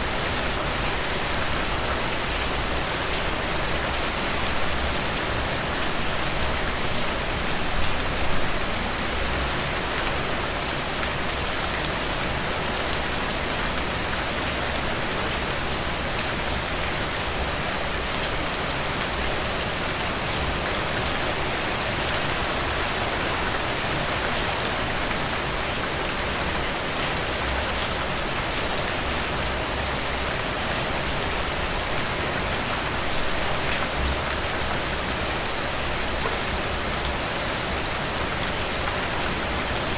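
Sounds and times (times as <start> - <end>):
rain falling on leaves: 0.0 - 39.9.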